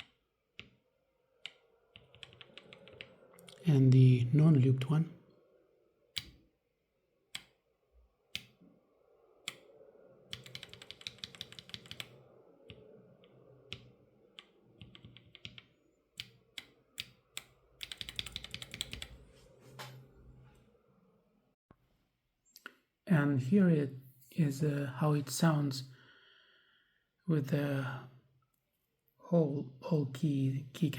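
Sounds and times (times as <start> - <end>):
keyboard typing: 0.0 - 4.0, 10.3 - 19.2.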